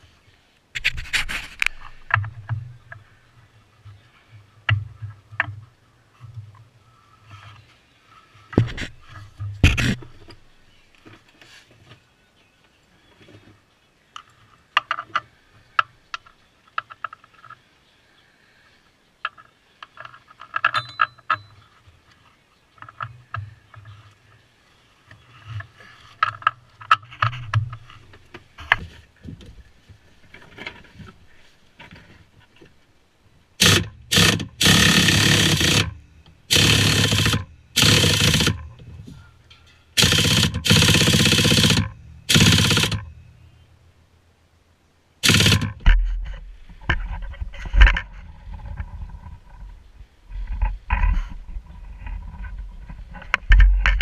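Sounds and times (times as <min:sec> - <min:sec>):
metal tools clinking and scraping: 0:20.3 - 0:21.7, 0:38.9 - 0:40.0
impact wrench bursts: 0:33.6 - 0:38.7, 0:40.0 - 0:43.1, 0:45.2 - 0:45.8.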